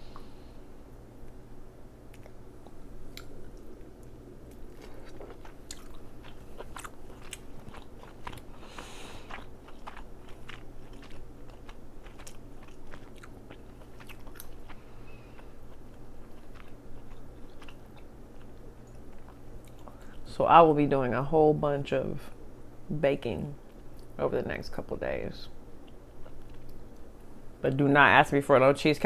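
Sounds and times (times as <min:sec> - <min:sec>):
wet chewing and lip smacks: 0:02.1 - 0:20.2, 0:25.8 - 0:27.2.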